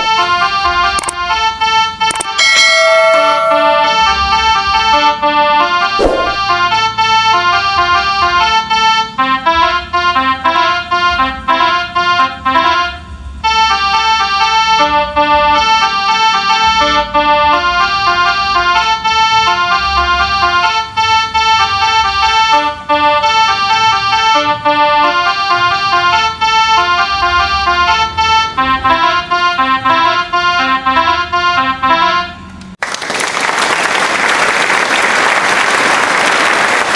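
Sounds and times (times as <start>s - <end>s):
melodica playing held notes: 0.2s - 5.5s.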